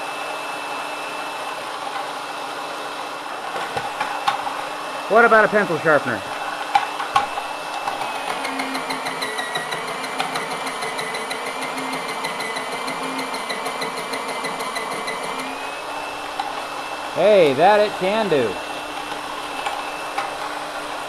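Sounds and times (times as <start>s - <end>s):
electric motor whining: 7.4s - 21.0s.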